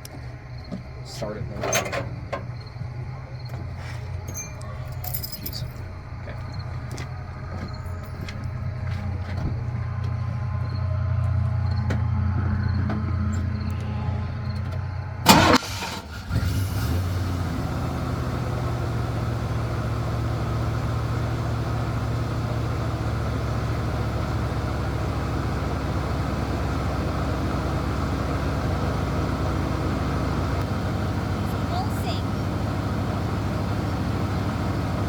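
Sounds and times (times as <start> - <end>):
pickup engine idling: 0.0 - 35.0
engine starting clunk: 1.5 - 2.8, 14.4 - 18.4.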